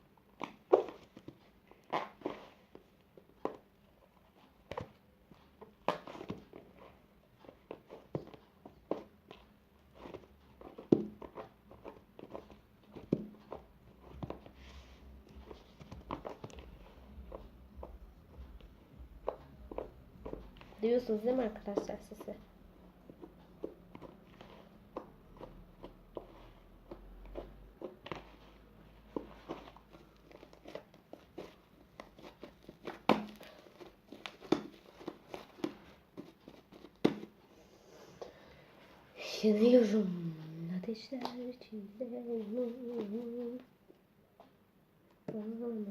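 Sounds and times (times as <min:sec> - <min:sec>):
slime squelching and popping: 0:29.0 - 0:35.9.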